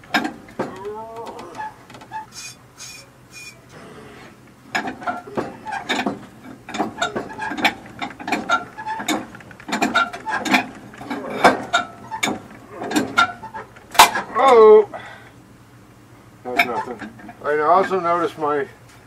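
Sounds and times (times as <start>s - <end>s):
metal tools clicking and clanking: 4.7s - 14.6s.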